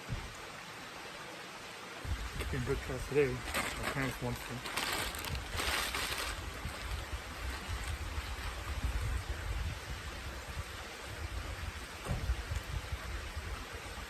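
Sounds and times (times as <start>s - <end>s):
creek water running over rocks: 0.0s - 14.0s.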